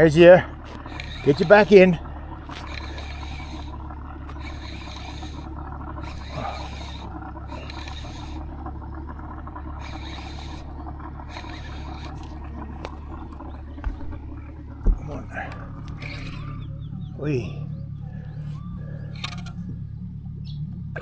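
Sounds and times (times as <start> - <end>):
rattling hiss bursts: 0.0 - 16.6
boat motor humming: 0.0 - 21.0.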